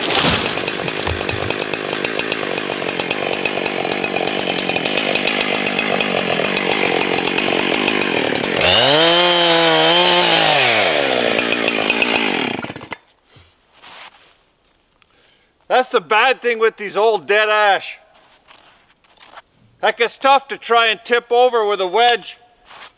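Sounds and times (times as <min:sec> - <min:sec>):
creaking groan of wood: 0:00.0 - 0:02.0
chainsaw cutting wood: 0:00.0 - 0:13.1.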